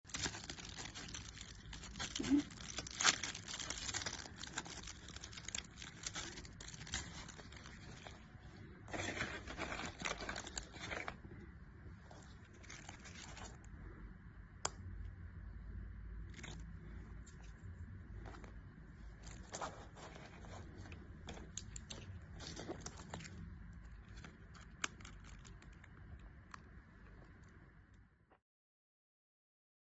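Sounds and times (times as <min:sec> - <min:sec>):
packaging crinkling and tearing: 0:00.0 - 0:11.2, 0:12.1 - 0:13.6, 0:16.3 - 0:17.6, 0:19.2 - 0:26.6.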